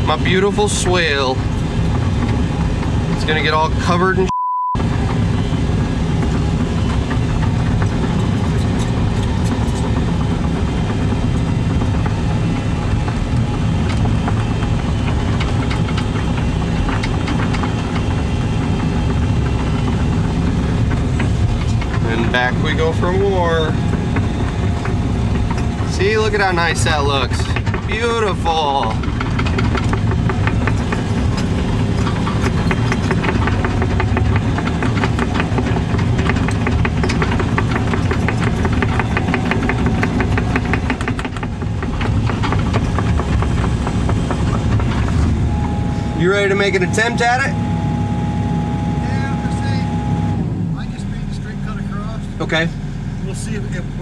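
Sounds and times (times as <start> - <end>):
diesel engine rumbling: 0.0 - 54.0
sharp clicks and knocks: 4.8 - 47.4.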